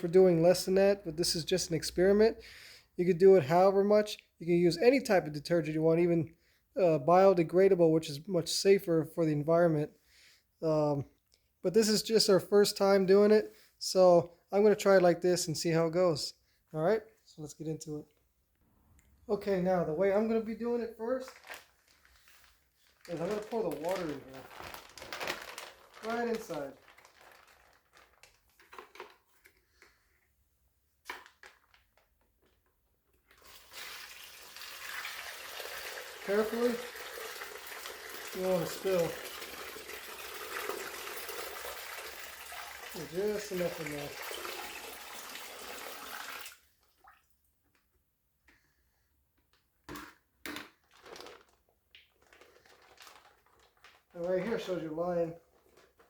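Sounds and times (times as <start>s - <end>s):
plastic bag crinkling: 20.1s - 29.6s, 31.1s - 33.9s, 50.7s - 56.0s
water pouring into bag: 20.4s - 29.3s, 33.3s - 47.3s, 50.5s - 56.0s.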